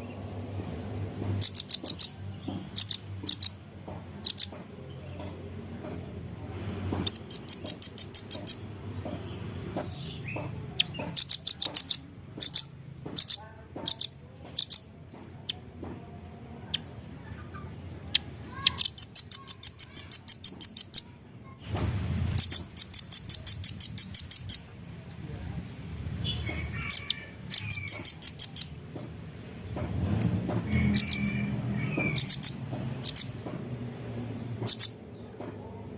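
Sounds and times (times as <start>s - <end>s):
bird calling high-pitched chips: 0.9s - 3.6s, 4.2s - 4.6s, 7.0s - 8.7s, 10.8s - 14.9s, 16.8s - 21.2s, 22.4s - 24.7s, 26.2s - 28.8s, 30.8s - 33.4s, 34.6s - 35.0s.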